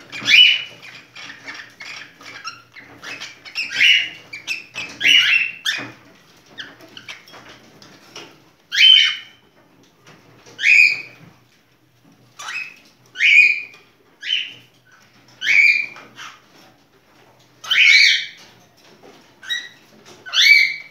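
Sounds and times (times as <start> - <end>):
cockatiel shrill calls: 8.7 - 9.3.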